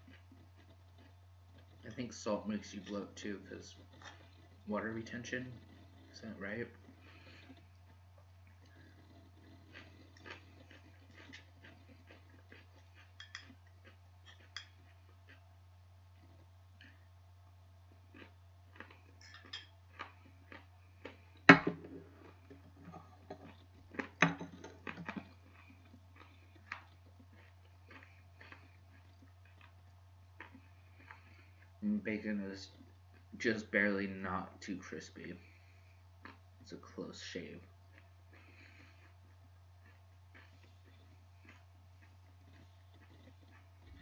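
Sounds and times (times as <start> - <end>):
chewing: 0.0 - 44.0
fork clinking against bowl: 13.2 - 13.6.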